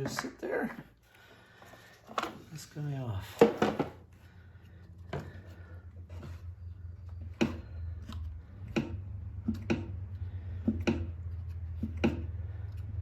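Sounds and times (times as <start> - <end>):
engine clunking when turned by hand: 7.1 - 13.0.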